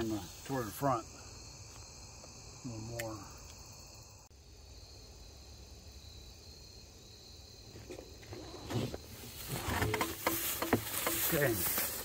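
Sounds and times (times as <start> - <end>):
crickets chirring: 0.0 - 12.0
rustling: 7.7 - 12.0.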